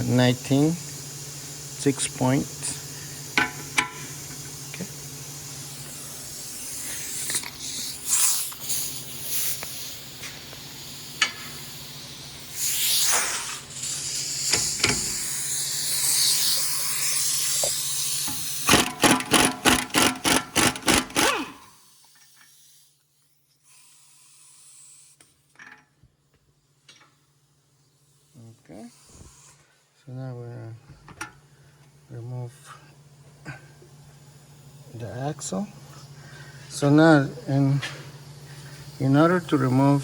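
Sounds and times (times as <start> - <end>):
impact wrench hammering: 3.4 - 4.4, 18.3 - 21.7.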